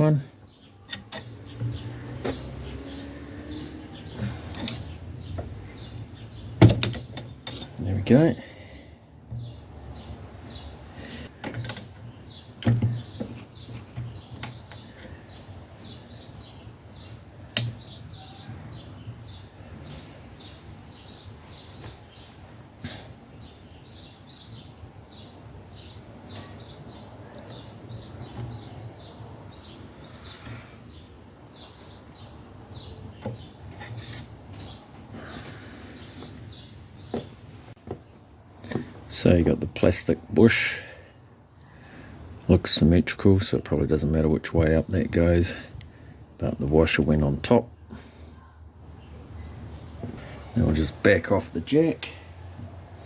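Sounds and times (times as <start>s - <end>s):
small birds chirping: 0.0s - 53.0s
sharp knocks: 6.6s - 7.3s.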